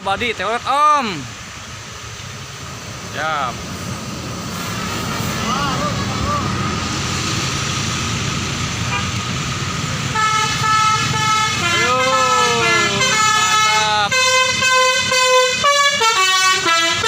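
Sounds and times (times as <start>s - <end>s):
bus engine: 0.0s - 17.0s
multi-tone bus horn playing tune: 8.8s - 9.3s, 10.0s - 17.0s.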